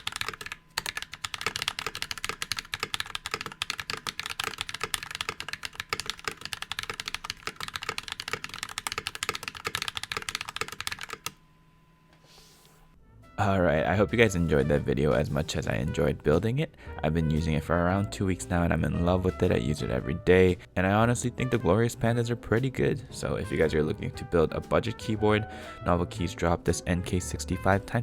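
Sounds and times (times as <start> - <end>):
keyboard typing clacks: 0.0 - 11.4.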